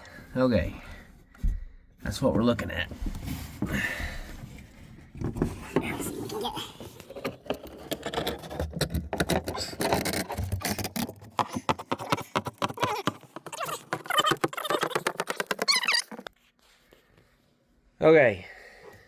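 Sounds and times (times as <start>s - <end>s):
hand tools clicking and clattering: 6.9s - 16.3s.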